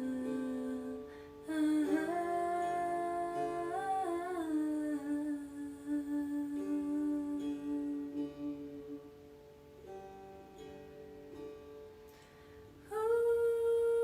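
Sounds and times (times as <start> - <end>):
person humming long notes: 0.0 - 9.0.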